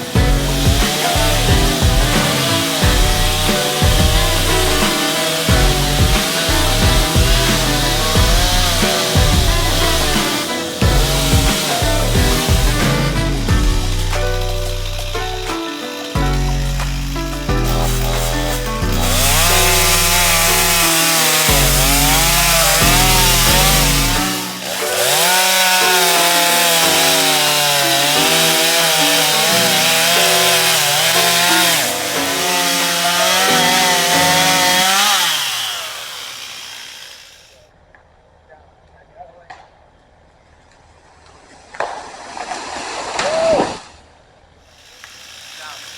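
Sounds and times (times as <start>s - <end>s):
music with stepping bass line: 0.0s - 15.6s, 16.2s - 24.5s
chainsaw cutting wood: 0.0s - 37.6s, 44.7s - 45.9s.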